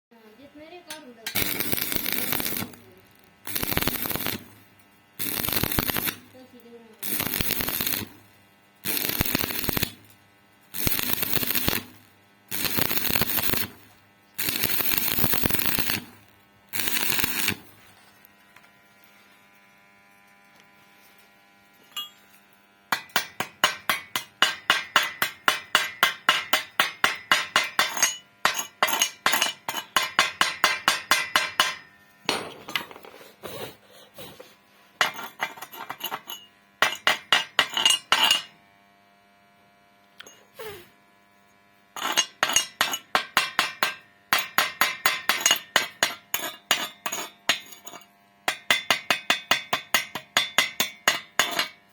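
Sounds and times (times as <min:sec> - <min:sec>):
chipping hammer tapping metal: 0:00.9 - 0:04.6, 0:05.2 - 0:06.4, 0:07.0 - 0:08.2, 0:08.8 - 0:10.1, 0:10.8 - 0:17.6, 0:22.9 - 0:33.0, 0:35.0 - 0:38.5, 0:42.0 - 0:51.8
welding arc crackling: 0:00.9 - 0:18.9, 0:41.9 - 0:47.4.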